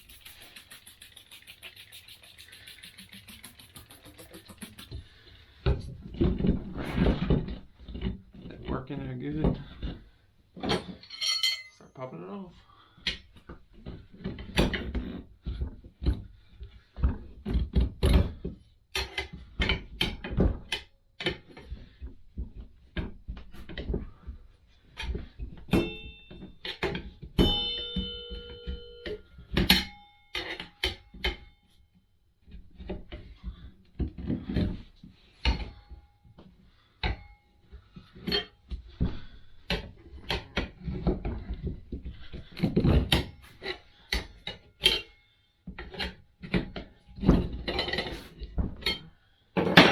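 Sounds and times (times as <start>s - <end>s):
ringing metallic clinks: 11.0s - 12.0s, 27.4s - 29.1s.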